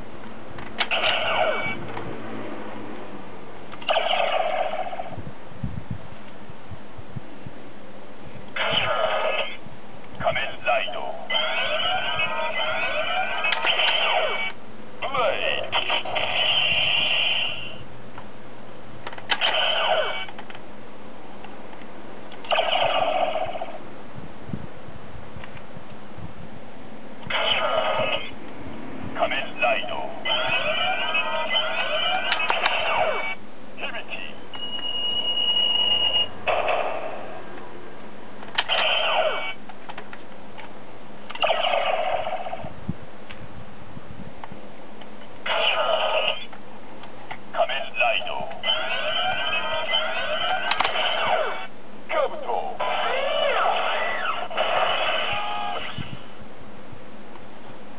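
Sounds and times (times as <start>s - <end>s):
toy belt electronic sound effects: 0.8s - 1.8s, 15.7s - 17.8s, 19.3s - 20.4s, 30.2s - 33.4s, 38.6s - 39.6s, 45.5s - 46.5s, 47.7s - 51.7s, 52.8s - 56.1s
sharp click: 50.7s - 51.0s.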